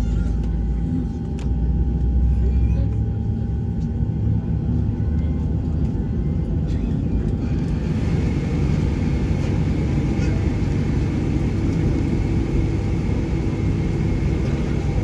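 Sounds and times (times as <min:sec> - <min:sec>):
airliner low rumble: 0:00.0 - 0:15.0.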